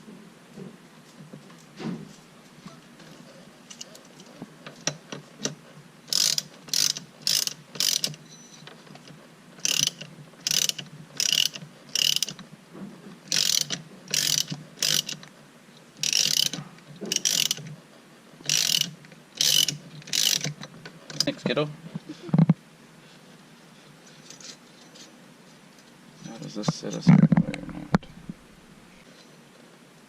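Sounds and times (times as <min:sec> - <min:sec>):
ratchet wrench clicking: 0:06.1 - 0:08.2, 0:09.6 - 0:12.4, 0:13.3 - 0:15.2, 0:16.0 - 0:17.7, 0:18.4 - 0:21.3.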